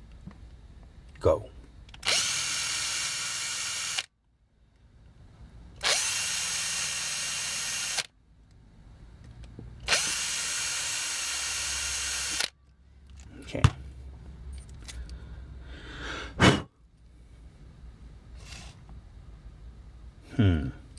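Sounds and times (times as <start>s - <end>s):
power drill drilling a rivet: 2.0s - 4.1s, 5.8s - 8.1s, 9.8s - 12.5s.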